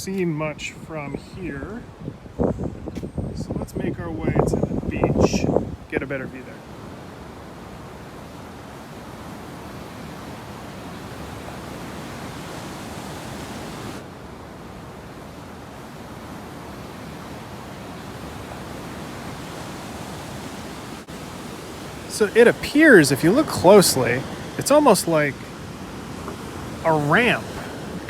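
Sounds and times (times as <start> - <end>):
ocean surf on beach: 0.0 - 28.0.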